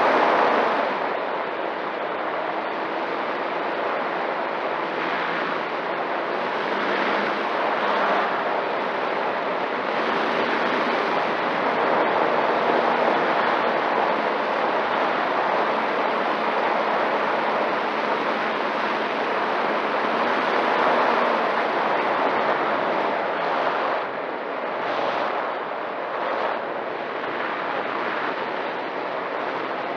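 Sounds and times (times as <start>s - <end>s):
steady rushing noise: 0.0s - 29.9s.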